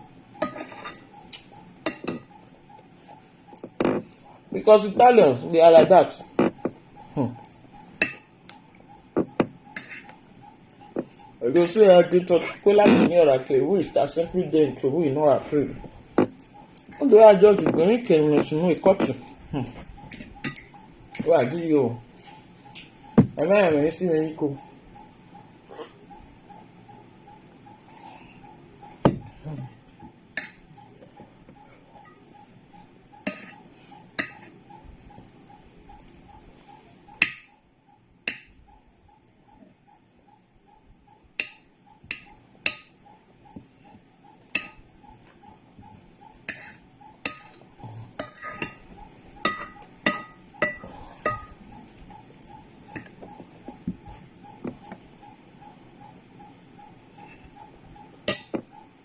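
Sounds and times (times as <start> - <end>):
faint steady hum: 0.0 - 59.0
cutlery clinking on a plate: 0.4 - 1.1, 1.9 - 2.3, 33.3 - 33.6, 48.2 - 51.6, 58.3 - 58.7.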